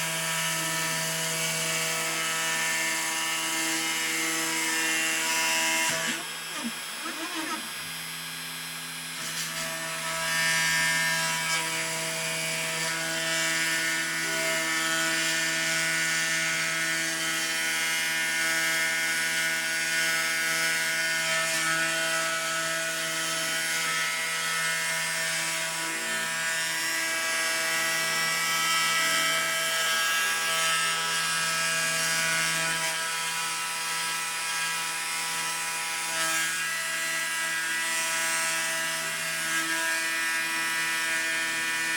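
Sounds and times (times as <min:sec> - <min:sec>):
spindle motor whine: 0:03.3 - 0:11.1.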